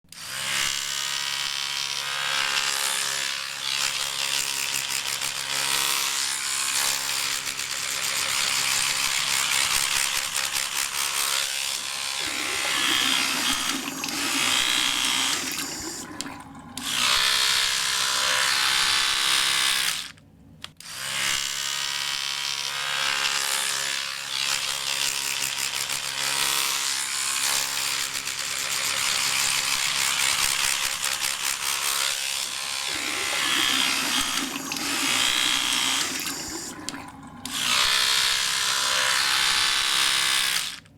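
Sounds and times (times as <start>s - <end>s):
electric toothbrush buzzing: 0.2s - 20.1s, 20.9s - 40.9s
bristles scrubbing: 12.2s - 17.2s, 32.9s - 37.9s.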